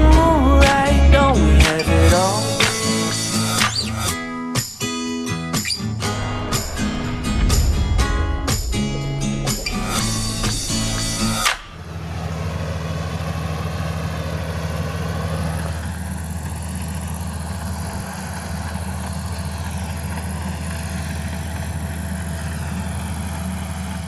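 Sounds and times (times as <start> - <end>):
combine harvester engine running: 5.9 - 24.0.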